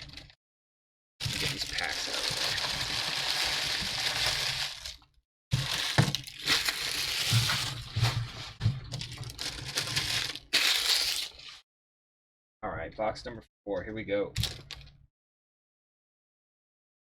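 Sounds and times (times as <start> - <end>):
foil packs crinkling: 1.2 - 8.3, 9.0 - 11.6.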